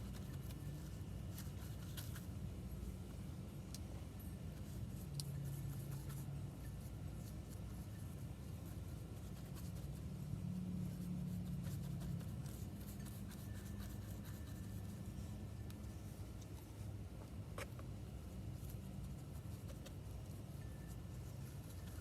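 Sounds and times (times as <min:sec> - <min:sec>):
steady low hum: 0:00.0 - 0:22.0
brush scratchy rubbing strokes: 0:04.6 - 0:17.0.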